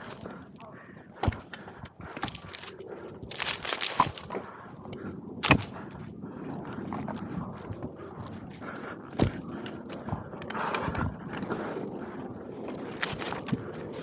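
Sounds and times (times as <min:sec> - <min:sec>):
irregular knocks and clicks: 0:06.9 - 0:11.6.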